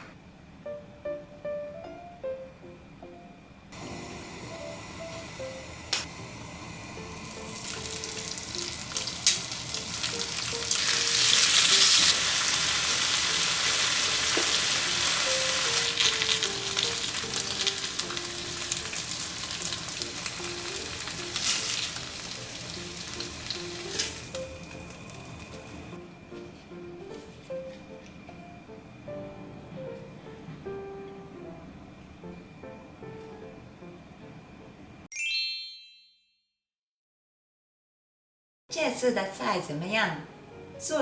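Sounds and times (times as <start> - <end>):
food sizzling in frying pan: 3.8 - 26.0.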